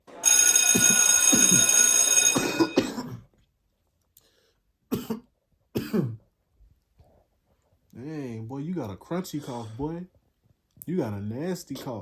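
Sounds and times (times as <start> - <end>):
bell ringing: 0.2 - 2.8
harsh crunchy coughing: 2.4 - 3.3, 4.9 - 6.2, 9.3 - 9.9.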